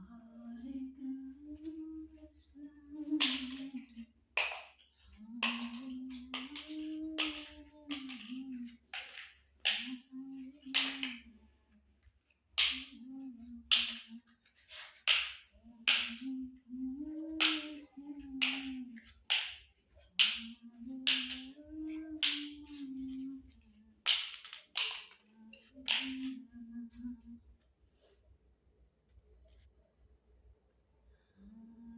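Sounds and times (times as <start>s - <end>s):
low wavering hum: 0.0s - 9.0s, 15.5s - 23.9s, 26.2s - 27.6s, 30.5s - 31.9s
plastic toy pieces clicking: 4.4s - 10.0s, 24.1s - 26.3s.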